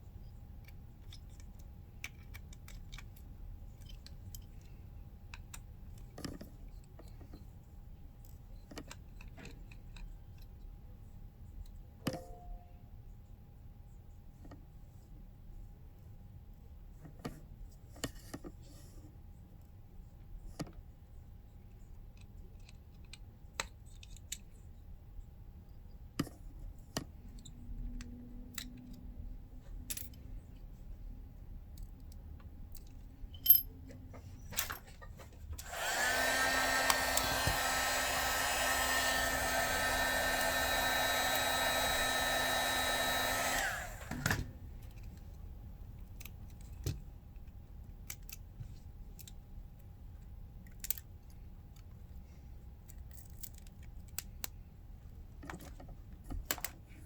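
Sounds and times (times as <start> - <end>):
electric blower whining: 35.6 - 44.5.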